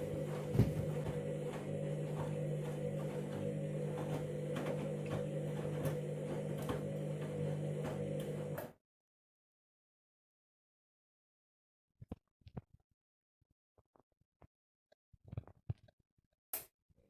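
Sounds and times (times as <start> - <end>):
washing machine motor hum: 0.0 - 8.8.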